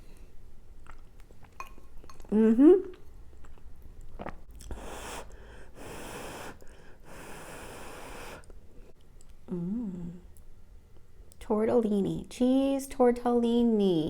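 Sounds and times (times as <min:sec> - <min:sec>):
chewing: 0:00.2 - 0:04.8
hissing breaths: 0:04.7 - 0:08.6.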